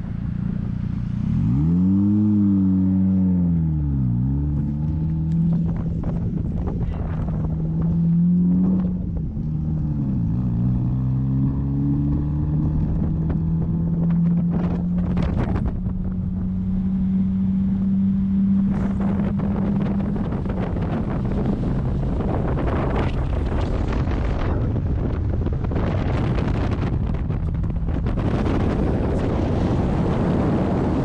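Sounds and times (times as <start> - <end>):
wind buffeting microphone: 4.6 - 31.0.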